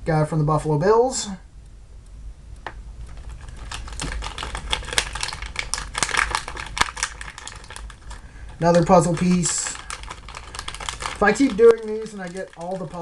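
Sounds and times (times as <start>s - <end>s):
plastic wrapper crinkling: 3.0s - 13.0s.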